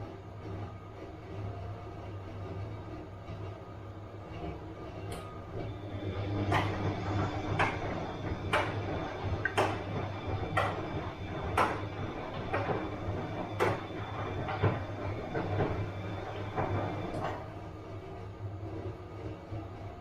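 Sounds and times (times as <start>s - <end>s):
washing machine humming: 0.0s - 20.0s
washing machine knocking: 5.8s - 17.6s.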